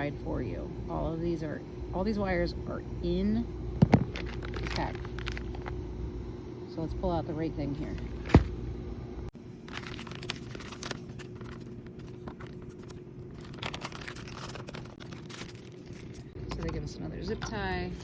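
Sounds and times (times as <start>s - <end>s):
low hum: 0.0s - 18.0s
plastic packaging crinkling: 3.9s - 5.8s, 9.4s - 16.7s.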